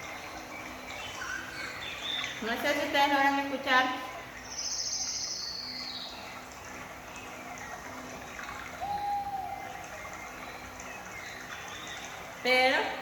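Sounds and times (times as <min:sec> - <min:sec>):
birds calling: 0:00.0 - 0:13.0
running river: 0:00.0 - 0:13.0
high rapid bird trill: 0:08.5 - 0:12.1.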